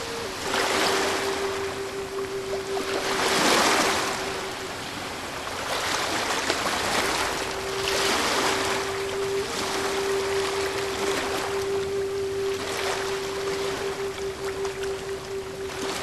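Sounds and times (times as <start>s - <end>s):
ocean waves washing in: 0.0s - 16.0s
steady high hum: 0.0s - 16.0s.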